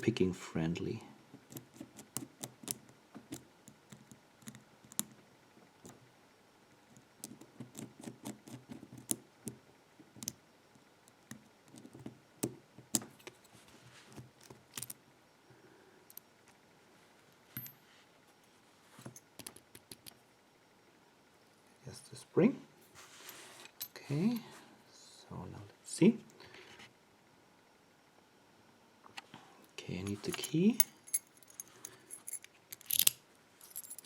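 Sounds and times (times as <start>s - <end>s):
padlock parts clicking: 14.4s - 15.0s, 19.2s - 20.2s, 30.0s - 34.0s.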